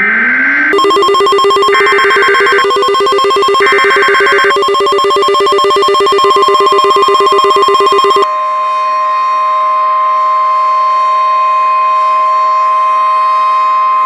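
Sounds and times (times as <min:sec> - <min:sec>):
rising siren tone: 0:00.0 - 0:14.0
pulsing telephone-like ringing tone: 0:00.7 - 0:08.3
two-tone alert sound: 0:00.7 - 0:08.3.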